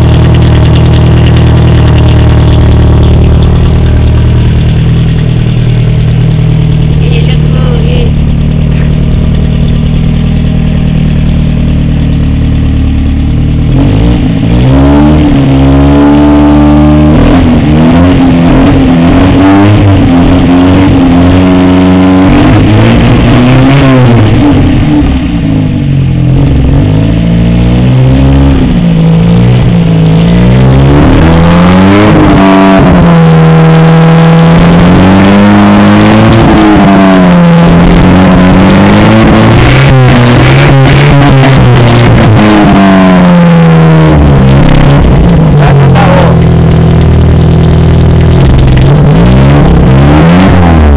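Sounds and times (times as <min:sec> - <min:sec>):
car engine revving: 0:00.0 - 0:50.9.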